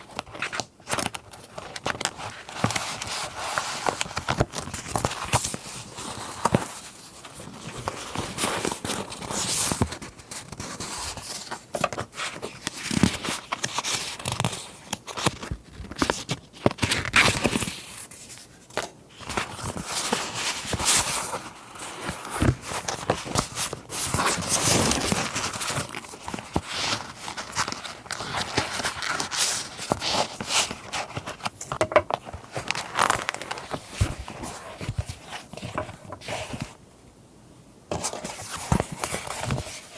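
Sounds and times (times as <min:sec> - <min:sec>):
paper rustling and crinkling: 0:00.0 - 0:36.8, 0:37.9 - 0:39.9.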